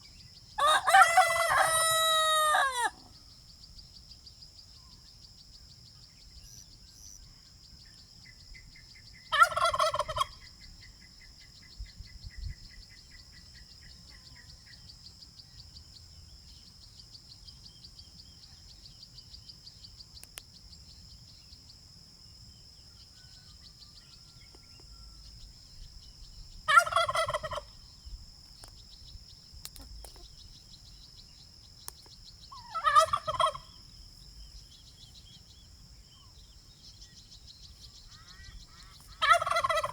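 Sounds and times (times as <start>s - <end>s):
turkey gobbling: 0.6s - 2.9s, 9.3s - 10.4s, 26.7s - 27.7s, 32.6s - 33.7s, 39.1s - 39.9s
faint bird trill: 22.8s - 39.9s.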